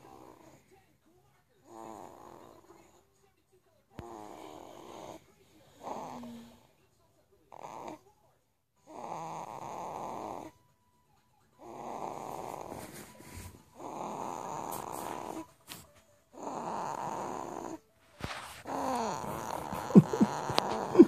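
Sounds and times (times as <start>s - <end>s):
boy snoring heavily: 1.7s - 2.6s, 4.0s - 6.6s, 8.9s - 10.5s, 11.6s - 12.8s, 13.8s - 15.4s, 16.4s - 17.8s, 18.7s - 21.0s.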